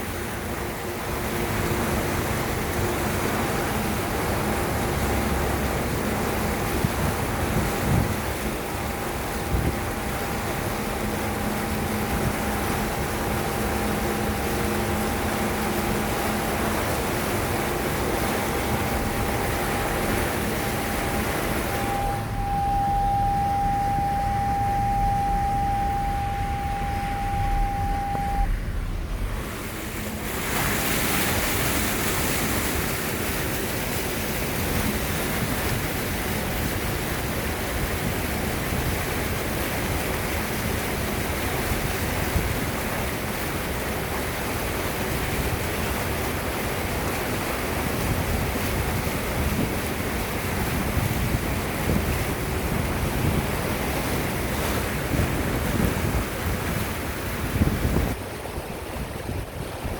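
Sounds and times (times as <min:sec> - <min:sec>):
flowing rainwater: 0:00.0 - 0:59.9
wind buffeting microphone: 0:00.2 - 0:59.9
low rumble: 0:04.6 - 0:31.9
high-pitched tone: 0:07.5 - 0:30.2.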